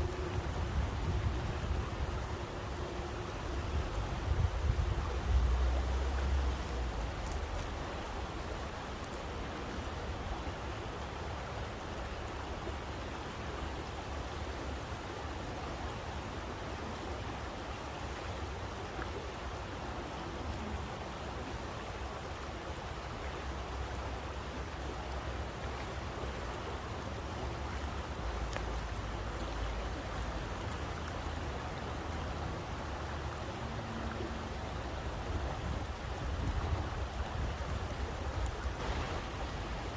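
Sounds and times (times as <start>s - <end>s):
water rushing: 0.0s - 39.9s
faint ticks: 7.1s - 7.8s.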